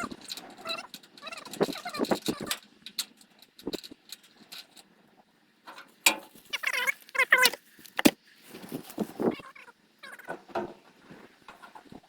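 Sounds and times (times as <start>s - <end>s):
wavering animal cries: 0.0s - 2.6s, 6.5s - 7.6s, 9.2s - 10.5s.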